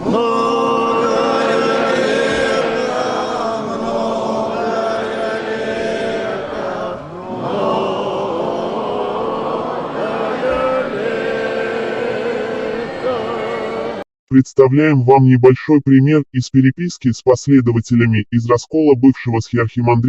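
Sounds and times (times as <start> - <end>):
church choir chanting: 0.0 - 14.0.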